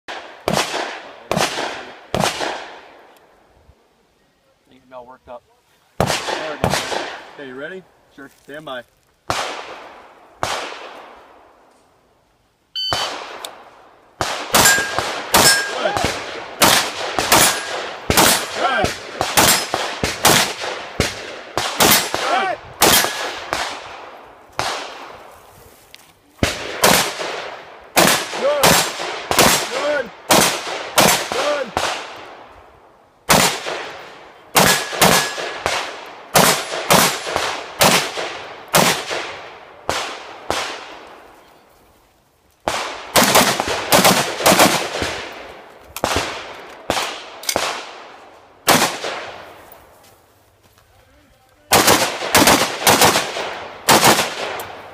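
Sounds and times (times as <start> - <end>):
rapid gunfire: 14.2 - 24.0, 26.4 - 32.1, 34.5 - 40.9, 42.7 - 45.3, 51.7 - 54.6
steel targets ringing: 14.6 - 15.9.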